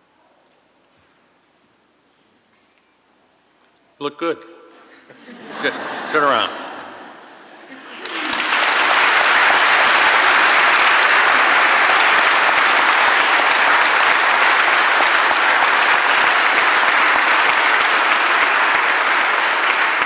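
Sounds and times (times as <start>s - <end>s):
congregation clapping in church: 7.9s - 20.0s.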